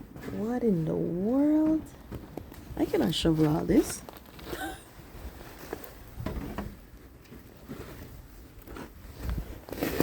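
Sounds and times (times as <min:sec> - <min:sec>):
snow crunching and knocks: 0:07.6 - 0:10.0.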